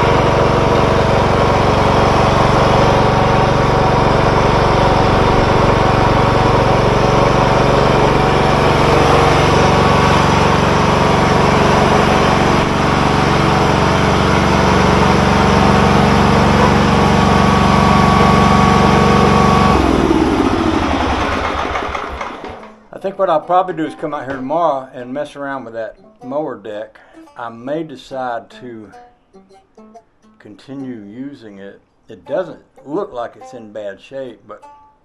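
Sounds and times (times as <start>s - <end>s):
lawn mower engine running: 0.0s - 22.9s.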